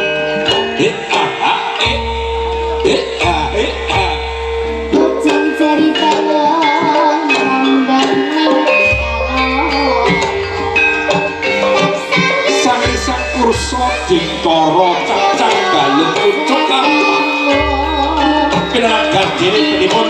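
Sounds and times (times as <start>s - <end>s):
gamelan music: 0.0s - 20.0s.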